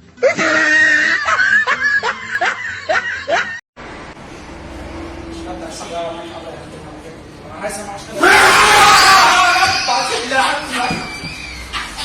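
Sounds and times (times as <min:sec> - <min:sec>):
high-pitched laughter: 0:00.2 - 0:03.6.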